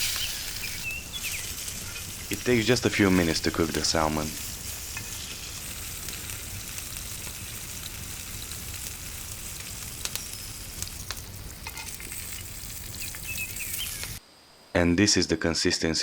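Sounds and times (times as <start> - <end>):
fish sizzling in a pan: 0.0 - 14.2.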